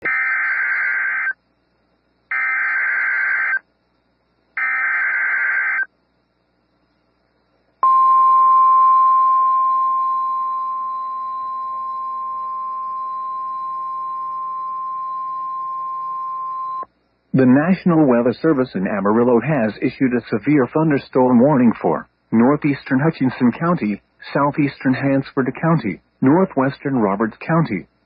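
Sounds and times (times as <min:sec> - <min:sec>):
steady warning tone: 0:07.8 - 0:27.2.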